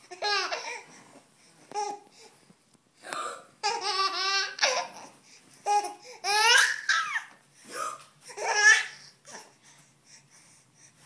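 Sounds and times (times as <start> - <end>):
baby laughing: 0.1 - 0.8, 3.6 - 7.4, 8.3 - 9.5.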